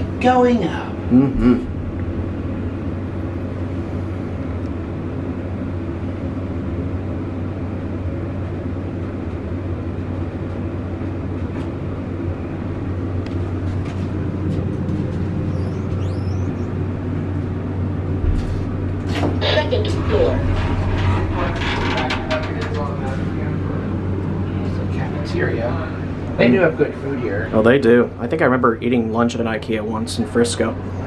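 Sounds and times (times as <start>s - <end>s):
elevator low hum: 0.0s - 31.0s
low thump: 18.2s - 19.0s.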